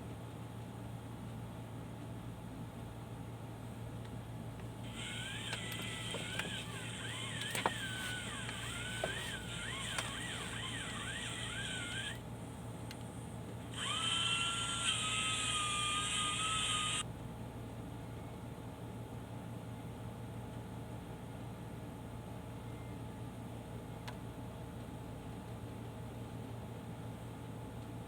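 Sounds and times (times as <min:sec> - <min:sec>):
angle grinder whining: 0:04.9 - 0:12.2, 0:13.7 - 0:17.0
clicks: 0:04.9 - 0:12.2.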